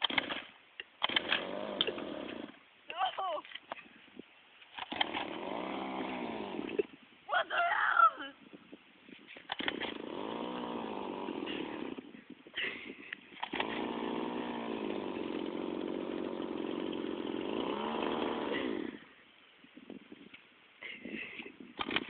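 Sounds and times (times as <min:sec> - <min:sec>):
engine running unevenly: 0:09.5 - 0:19.1.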